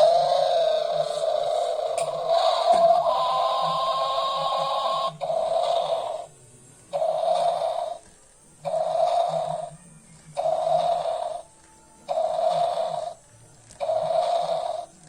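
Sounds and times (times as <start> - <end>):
toy dinosaur electronic roar: 0.0 - 6.3, 7.0 - 8.0, 8.7 - 9.7, 10.4 - 11.5, 12.1 - 13.2, 13.8 - 15.0.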